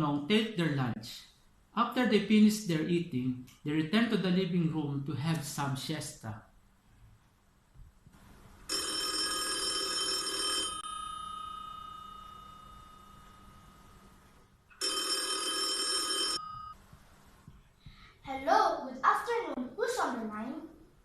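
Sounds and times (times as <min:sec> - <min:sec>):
telephone ringing: 0:08.7 - 0:14.2, 0:14.8 - 0:16.8.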